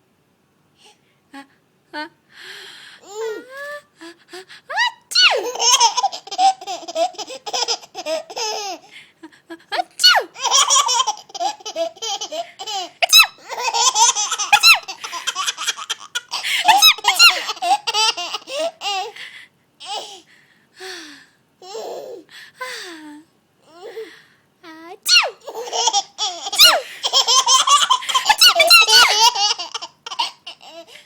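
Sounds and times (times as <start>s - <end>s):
baby laughing: 5.1s - 8.9s, 9.8s - 19.1s, 25.1s - 31.0s.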